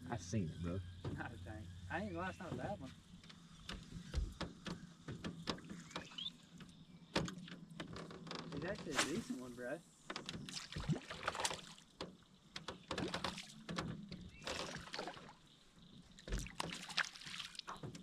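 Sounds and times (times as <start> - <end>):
faint low hum: 0.0 - 5.0.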